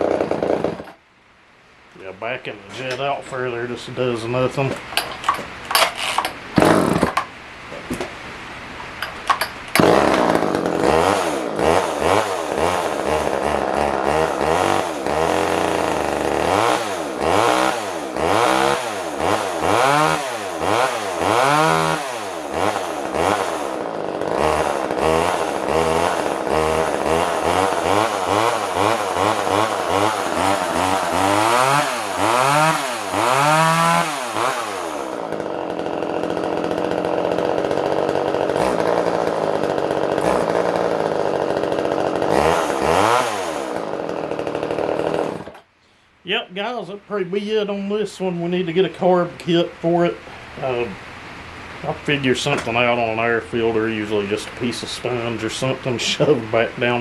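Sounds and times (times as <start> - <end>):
chainsaw engine revving: 0.0 - 1.0, 4.6 - 7.3, 9.7 - 45.7, 50.1 - 57.0.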